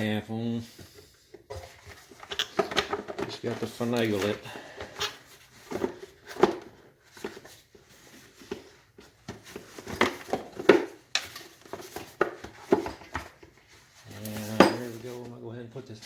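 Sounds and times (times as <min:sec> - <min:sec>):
plastic parts knocking and clicking: 0:01.4 - 0:07.4, 0:08.5 - 0:13.5.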